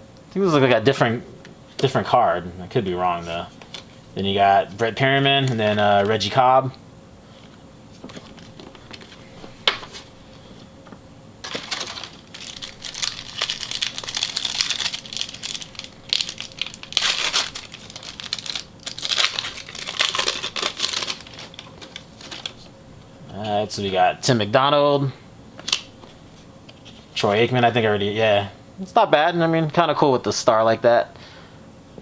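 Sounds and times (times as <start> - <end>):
wrapper crinkling and tearing: 11.4 - 22.7.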